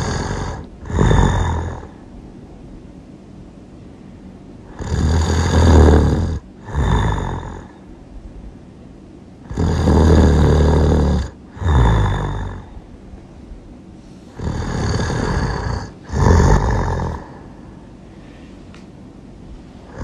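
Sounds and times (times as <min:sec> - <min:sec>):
person snoring loudly: 0:00.0 - 0:02.0, 0:04.7 - 0:07.8, 0:09.4 - 0:12.8, 0:14.3 - 0:17.6.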